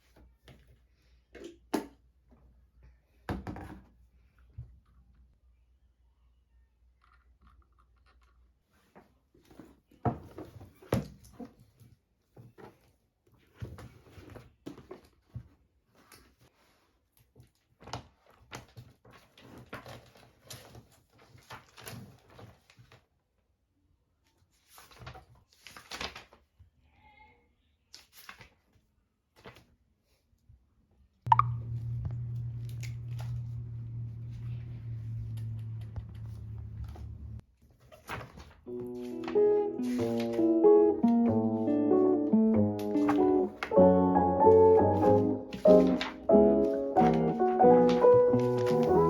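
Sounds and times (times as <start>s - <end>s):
low electrical hum: 31.3s - 37.4s.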